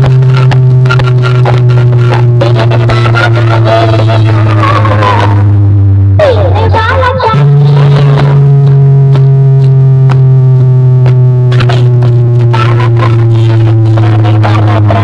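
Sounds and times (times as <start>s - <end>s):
synthesizer bass note: 0.0s - 15.0s
sharp percussive hits: 7.4s - 14.0s.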